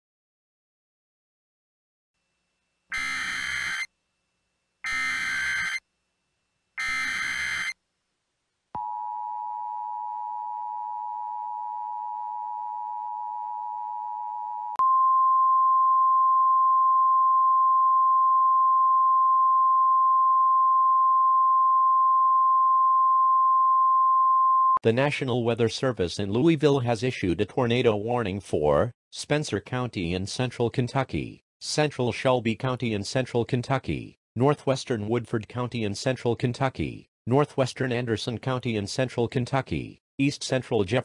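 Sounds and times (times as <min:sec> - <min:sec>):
steady warning alarm tone: 0:02.9 - 0:03.9, 0:04.8 - 0:05.8, 0:06.8 - 0:07.8
two-tone attention signal: 0:02.9 - 0:03.9, 0:04.9 - 0:05.8, 0:06.8 - 0:07.8.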